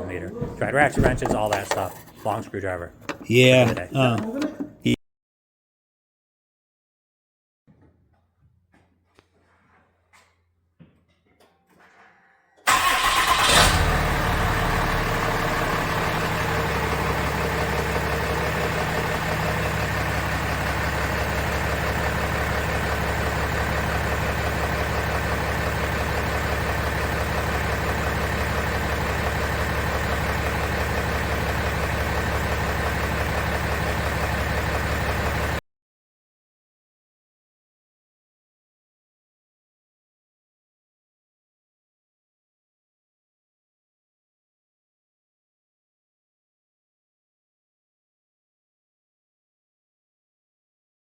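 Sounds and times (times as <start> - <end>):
truck engine starting and idling: 0.0 - 4.9, 12.7 - 35.6.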